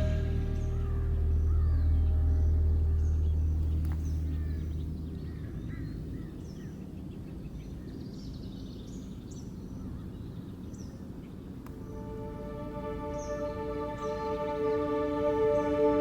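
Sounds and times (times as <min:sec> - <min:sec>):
low meditation drone: 0:00.0 - 0:06.3, 0:11.7 - 0:16.0
low steady noise: 0:00.0 - 0:08.2, 0:11.4 - 0:16.0.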